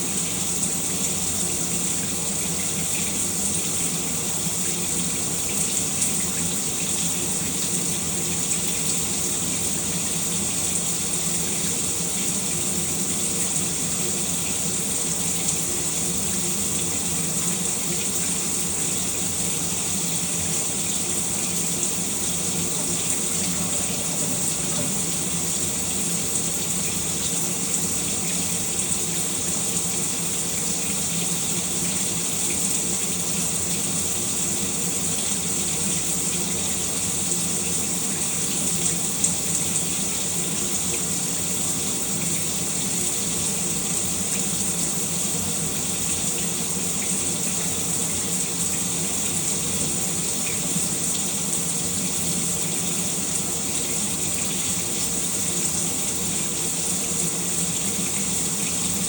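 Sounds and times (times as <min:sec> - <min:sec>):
shower water running: 0:00.0 - 0:59.0.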